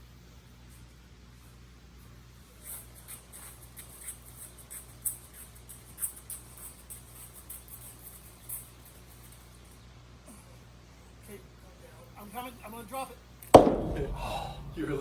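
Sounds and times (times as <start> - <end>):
faint low hum: 13.6 - 15.0.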